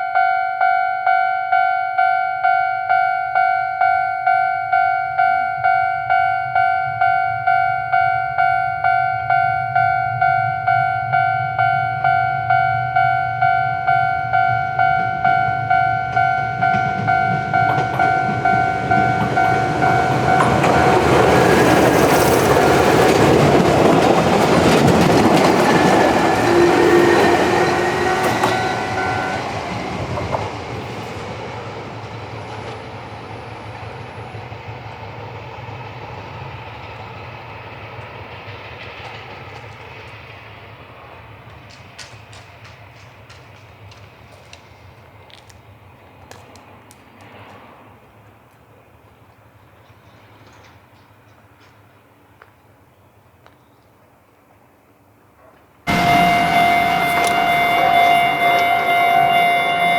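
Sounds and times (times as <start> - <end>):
level-crossing warning bell ringing: 0.0 - 34.6, 55.9 - 59.9
electric train passing: 0.0 - 52.6, 55.9 - 59.9
train wheel clatter: 8.4 - 52.6, 55.4 - 59.9.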